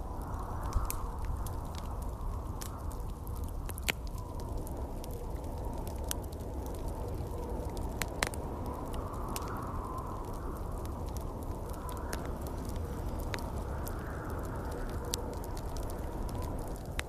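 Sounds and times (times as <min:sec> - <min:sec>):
fire popping: 0:00.0 - 0:17.0
wind with low rumble: 0:00.0 - 0:17.0
wood fire crackling: 0:00.0 - 0:17.0.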